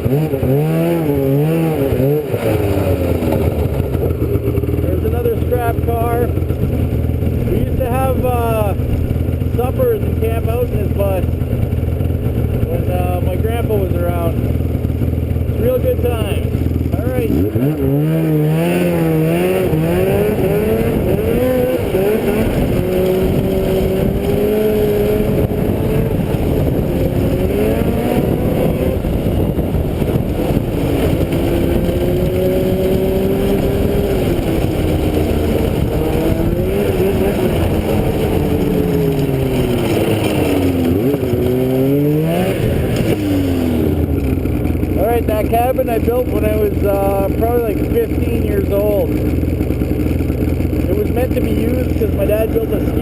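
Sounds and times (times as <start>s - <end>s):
small vehicle engine revving: 0.0s - 53.0s.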